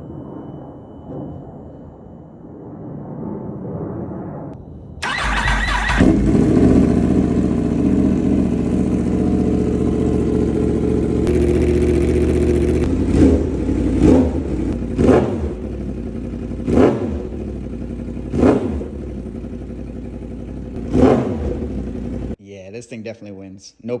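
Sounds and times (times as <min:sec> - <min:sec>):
motorcycle engine revving: 0:05.0 - 0:22.4
motorcycle engine starting and idling: 0:05.0 - 0:22.4.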